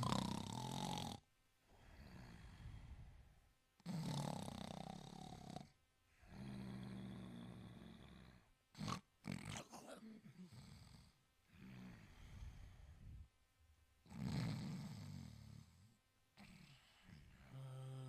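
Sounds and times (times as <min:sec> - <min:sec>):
dog snoring: 0:00.0 - 0:01.2, 0:03.8 - 0:12.8, 0:14.0 - 0:18.0.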